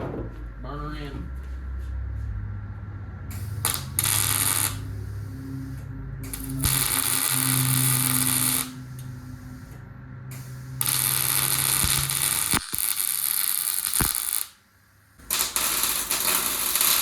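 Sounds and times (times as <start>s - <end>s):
steady low hum: 0.0s - 15.5s
welding arc crackling hiss: 3.3s - 14.6s, 15.2s - 17.0s.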